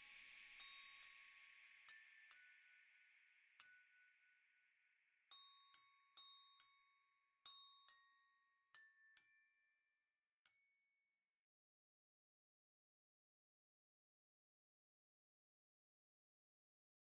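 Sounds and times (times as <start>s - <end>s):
bell-like melody: 0.0s - 9.8s.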